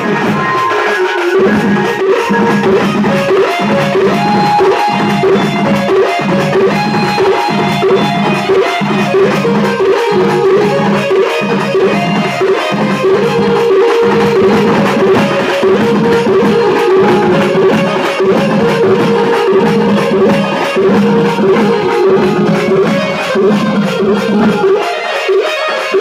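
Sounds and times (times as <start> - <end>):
loud music with driving drum beat: 0.0 - 26.0.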